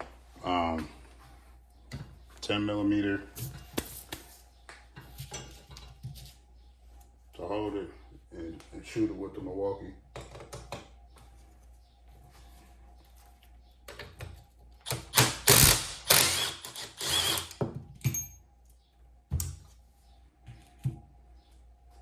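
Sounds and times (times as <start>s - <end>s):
cordless power tool whirring: 15.4s - 17.6s.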